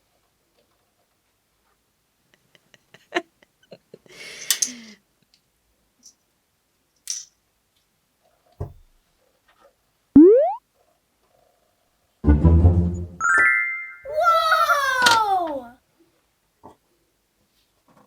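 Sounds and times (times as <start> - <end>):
cartoon rising whistle effect: 10.2 - 10.6.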